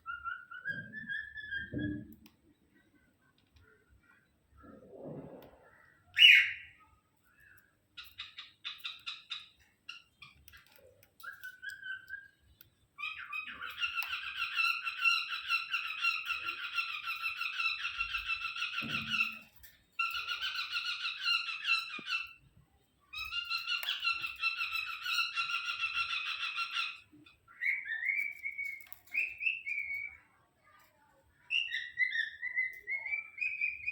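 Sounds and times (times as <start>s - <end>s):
whistled bird notes: 0.0s - 2.1s, 6.1s - 6.8s, 11.2s - 13.6s, 27.5s - 30.2s, 31.5s - 33.9s
cockatiel chattering and warbling: 8.0s - 22.4s, 23.1s - 30.2s, 31.5s - 33.9s.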